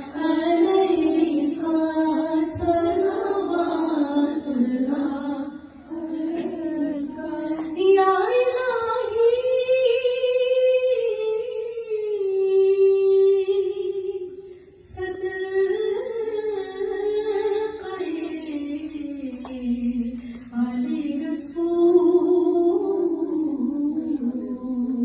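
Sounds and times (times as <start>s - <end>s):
singer breath: 20.1s - 20.6s.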